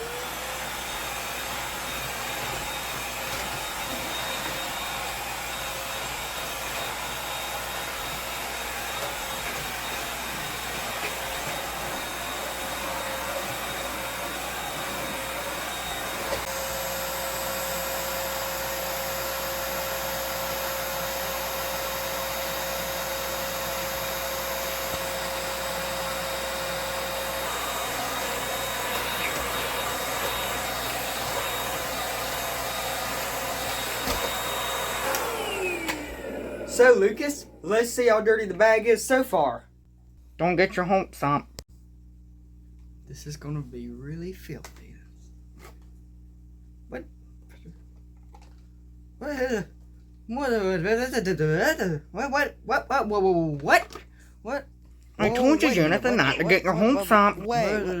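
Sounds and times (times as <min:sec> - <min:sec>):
vacuum cleaner running: 0:00.0 - 0:39.3, 0:55.2 - 0:58.0.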